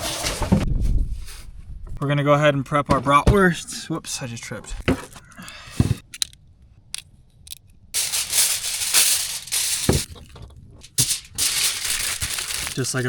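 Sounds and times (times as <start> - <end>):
plastic packaging crinkling: 8.0 - 13.0.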